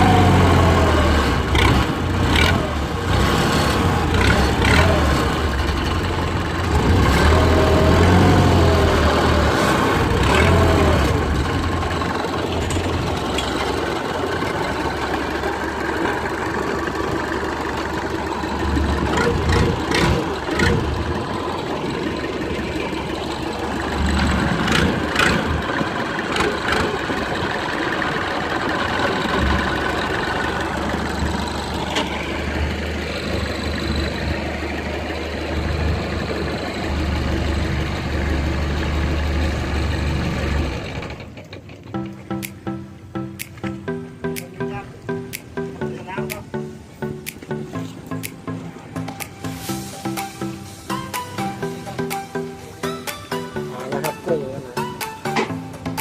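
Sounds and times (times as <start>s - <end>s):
boat engine running at low revs: 0.0s - 42.2s.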